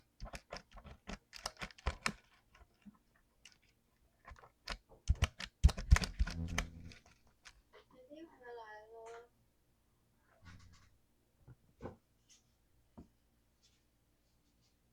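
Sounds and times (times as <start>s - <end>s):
typing on mechanical keyboard: 0.0s - 3.7s, 4.3s - 7.6s.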